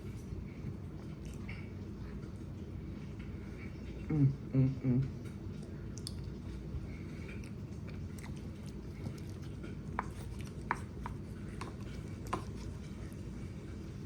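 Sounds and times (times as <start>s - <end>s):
close-up chewing: 5.3s - 14.0s.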